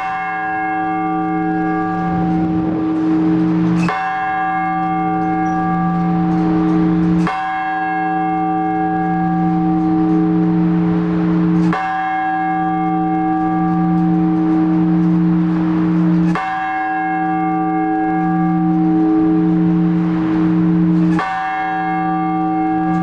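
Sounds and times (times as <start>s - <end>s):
large church bell strokes: 0.0s - 23.0s
deep hum: 0.8s - 7.2s, 22.2s - 23.0s.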